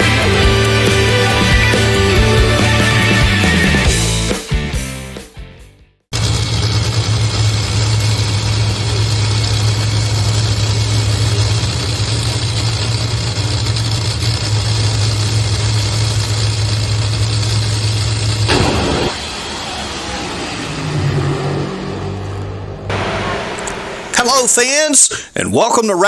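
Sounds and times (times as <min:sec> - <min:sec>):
dragster engine idling: 0:06.1 - 0:25.3.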